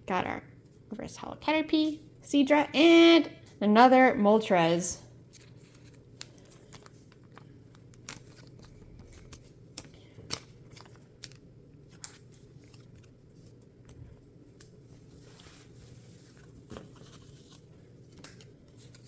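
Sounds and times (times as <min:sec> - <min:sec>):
low steady hum: 0:00.0 - 0:19.0
trading cards clicking and rustling: 0:05.3 - 0:14.8, 0:16.5 - 0:19.0.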